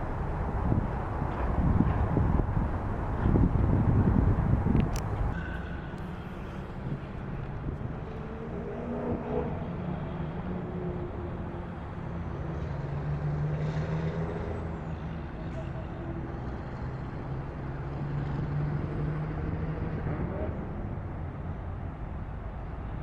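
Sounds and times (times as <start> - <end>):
wind on microphone: 0.0 - 9.7.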